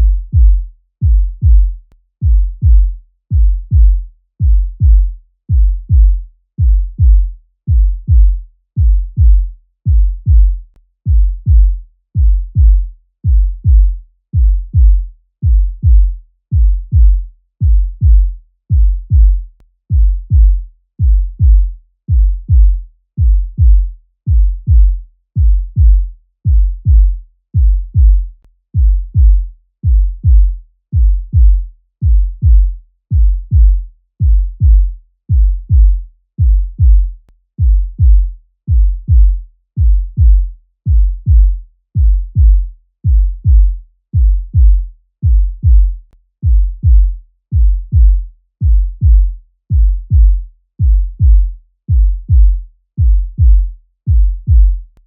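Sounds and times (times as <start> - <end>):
heartbeat thumps: 0.0 - 55.0.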